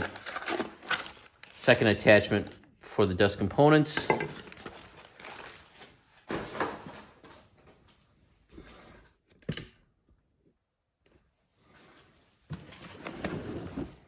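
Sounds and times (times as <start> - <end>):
packaging rustling and scraping: 0.0 - 2.0, 4.3 - 7.8, 12.5 - 14.0.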